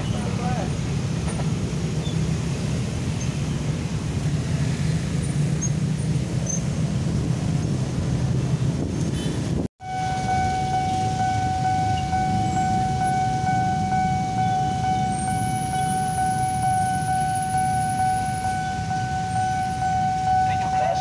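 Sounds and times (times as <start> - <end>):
low rumble of traffic: 0.0 - 21.0
level-crossing alarm ringing: 9.8 - 21.0.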